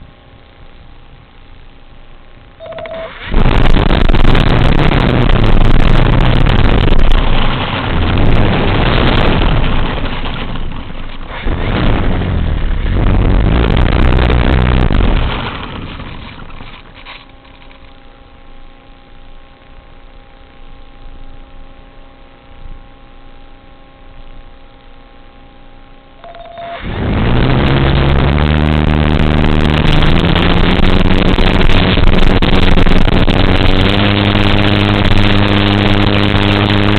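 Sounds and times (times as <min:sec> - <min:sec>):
short beep: 0:02.6 - 0:03.2, 0:26.2 - 0:26.8
drone motors buzzing: 0:26.2 - 0:36.9.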